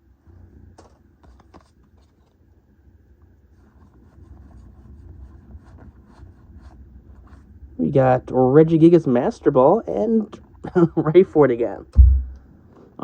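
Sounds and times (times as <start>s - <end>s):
low steady hum: 0.0s - 13.0s
trading cards rubbing and flicking: 0.8s - 2.4s.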